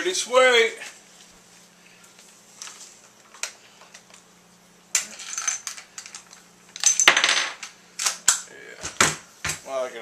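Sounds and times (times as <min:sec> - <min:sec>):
cartridges clicking and clinking: 0:04.9 - 0:08.4.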